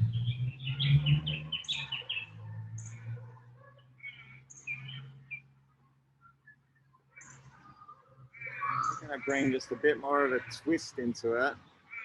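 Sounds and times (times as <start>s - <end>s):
birds chirping: 0.0s - 12.0s.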